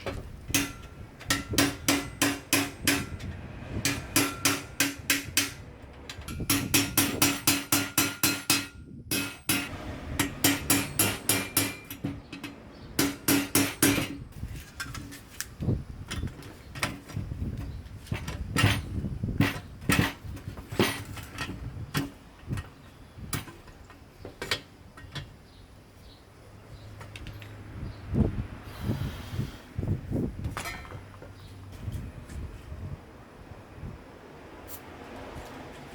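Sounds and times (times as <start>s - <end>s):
hammer tapping on metal: 0.5s - 14.2s.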